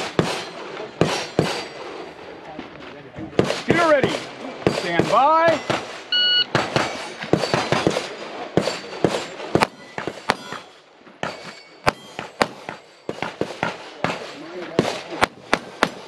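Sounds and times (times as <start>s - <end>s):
pistol shots: 3.4s - 5.9s, 6.5s - 16.0s
shot timer beep: 6.1s - 6.5s.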